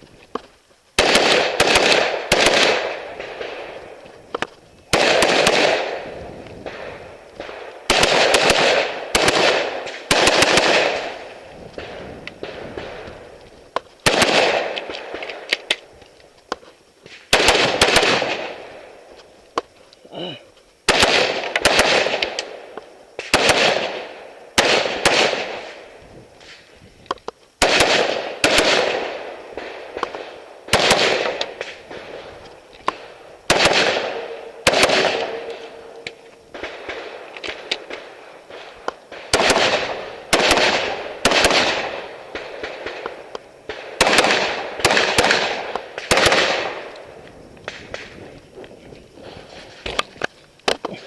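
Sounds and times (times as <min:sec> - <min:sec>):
rifle shots echoing: 0:01.0 - 0:13.3, 0:14.0 - 0:15.8, 0:17.1 - 0:19.0, 0:20.9 - 0:26.0, 0:27.6 - 0:48.3.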